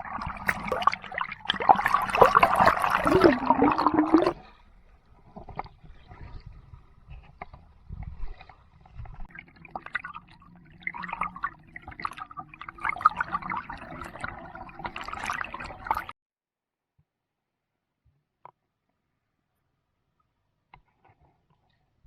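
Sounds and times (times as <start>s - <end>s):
water splashing and gurgling: 0.0s - 7.2s, 8.0s - 16.1s.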